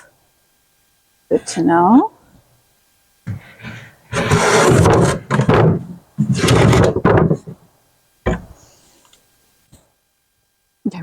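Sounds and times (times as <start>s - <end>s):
scraping and sliding on wood: 3.3s - 7.6s.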